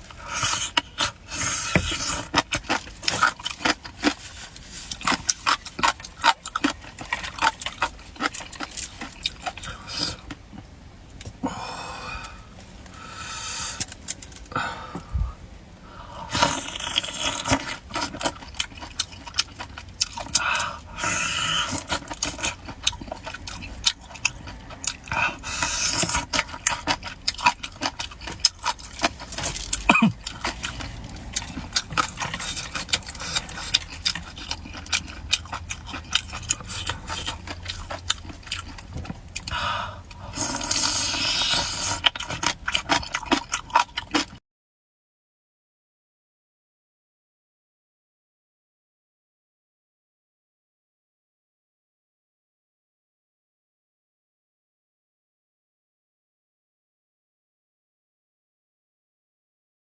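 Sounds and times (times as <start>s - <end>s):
wet chewing and lip-smacking: 0.0s - 11.4s, 16.4s - 44.4s
slurping: 20.0s - 44.3s.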